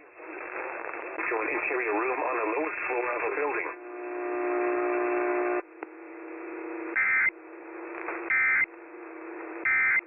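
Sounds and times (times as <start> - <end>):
faint hum: 0.0 - 10.0
steady buzz: 3.2 - 9.9.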